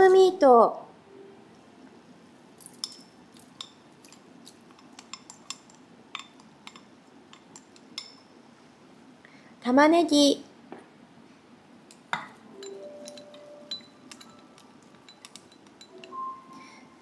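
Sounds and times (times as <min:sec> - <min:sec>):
utensil clinking against pot: 0:02.6 - 0:08.3, 0:12.1 - 0:16.4.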